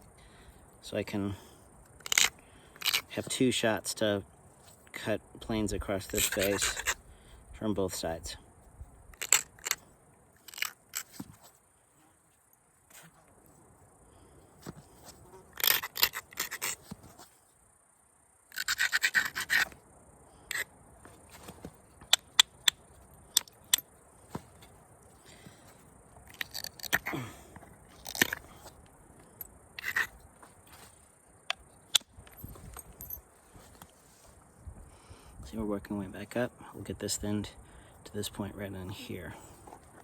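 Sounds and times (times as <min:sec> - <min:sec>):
stone edge scraping: 0:06.0 - 0:07.0, 0:14.7 - 0:17.2, 0:18.5 - 0:19.8, 0:27.9 - 0:28.8, 0:29.8 - 0:31.0.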